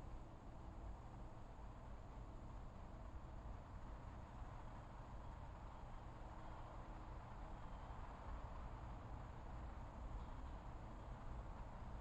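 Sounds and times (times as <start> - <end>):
outdoor ambient hiss: 0.0 - 12.0.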